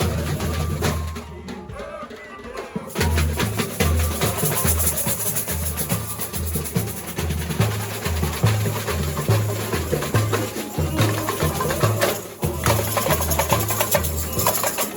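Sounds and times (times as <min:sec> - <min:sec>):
samba drumming: 0:00.0 - 0:14.9.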